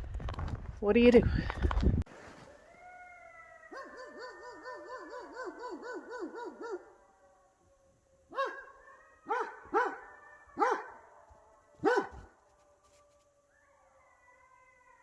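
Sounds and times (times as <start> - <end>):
coyotes yipping: 2.5 - 7.0, 8.3 - 15.0
faint coyote howls: 2.5 - 15.0
coyote sharp barks: 9.3 - 10.0, 10.6 - 11.0, 11.8 - 12.4.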